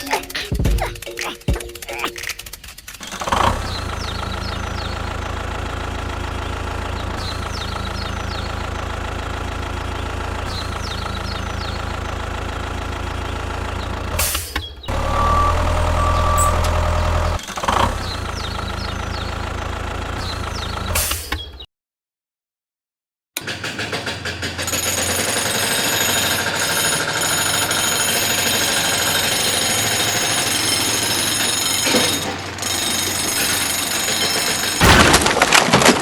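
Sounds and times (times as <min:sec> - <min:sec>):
small engine idling: 0:02.4 - 0:21.0, 0:23.4 - 0:35.4
engine revving: 0:02.4 - 0:21.1
short high beeps: 0:14.9 - 0:17.4.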